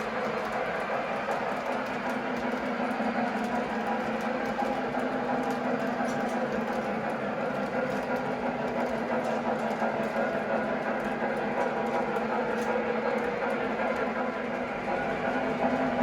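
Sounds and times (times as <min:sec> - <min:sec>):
model train motor hum: 0:00.0 - 0:16.0
wheel rumble: 0:00.0 - 0:16.0.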